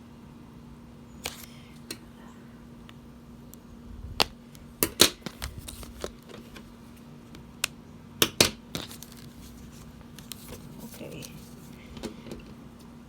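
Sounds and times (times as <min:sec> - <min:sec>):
handling plastic packaging: 0:04.9 - 0:07.5, 0:08.6 - 0:13.0.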